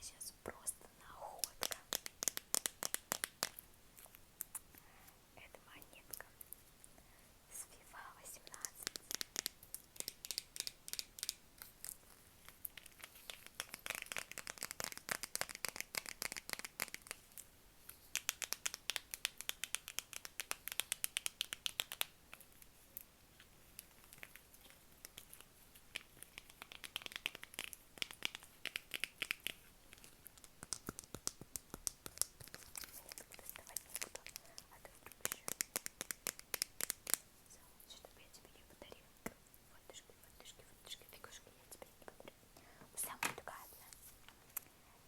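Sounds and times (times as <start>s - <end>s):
crinkling: 21.8s - 38.0s.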